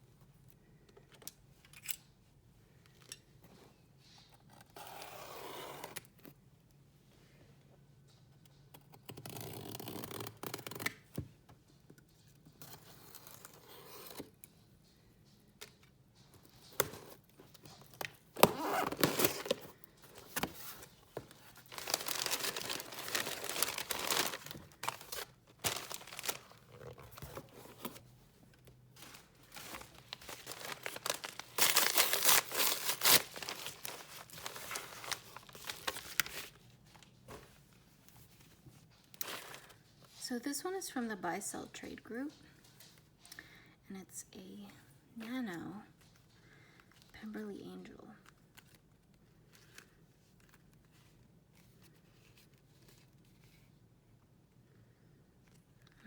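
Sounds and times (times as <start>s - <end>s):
packaging tearing and crinkling: 18.4s - 27.5s, 29.0s - 36.6s.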